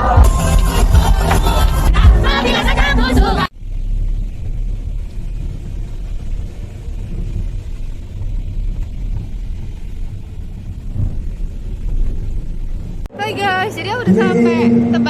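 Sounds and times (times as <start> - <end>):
music: 0.0 - 3.5
low vehicle rumble: 0.0 - 15.0.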